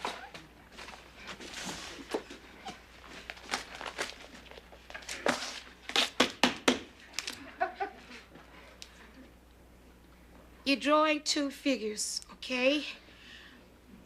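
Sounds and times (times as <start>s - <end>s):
paper rustling: 0.7s - 6.2s.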